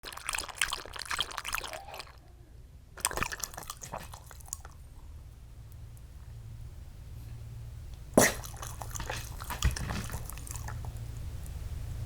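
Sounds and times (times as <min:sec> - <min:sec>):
dog lapping water: 0:00.0 - 0:02.2, 0:03.0 - 0:04.8, 0:08.2 - 0:11.0.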